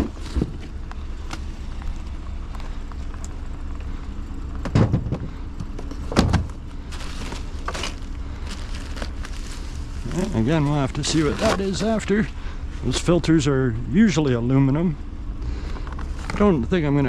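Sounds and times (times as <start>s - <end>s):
vehicle engine idling: 0.0s - 17.0s
scrap items clunking: 4.6s - 12.4s.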